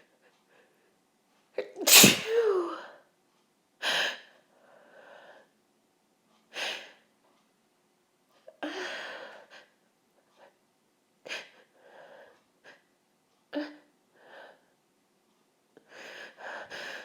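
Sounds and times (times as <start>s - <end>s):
woman sneezing: 1.8s - 2.8s
woman sniffing: 1.9s - 2.6s
woman breathing hard: 15.9s - 17.0s.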